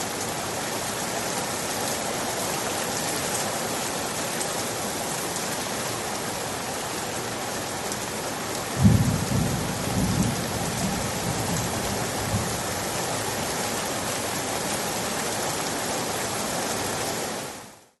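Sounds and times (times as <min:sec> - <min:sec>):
steady rain falling: 0:00.0 - 0:18.0
thunder clap rumbling: 0:08.8 - 0:12.6.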